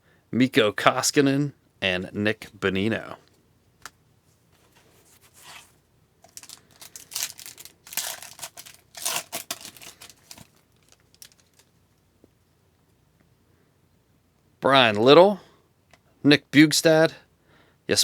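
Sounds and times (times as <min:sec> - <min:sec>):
faint handling sounds: 0:02.4 - 0:13.3
foil wrapper crinkling and tearing: 0:05.2 - 0:11.7.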